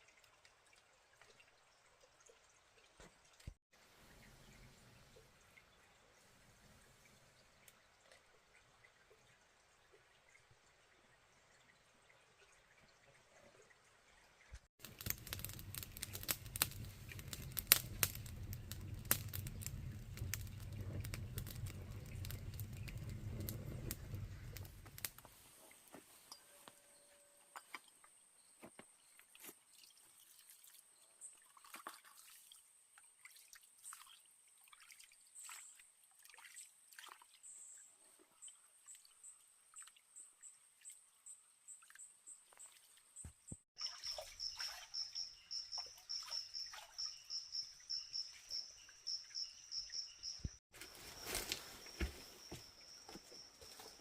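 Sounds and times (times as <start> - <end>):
water dripping: 0.0 - 25.2
water pouring and trickling: 0.0 - 26.4, 27.6 - 49.1.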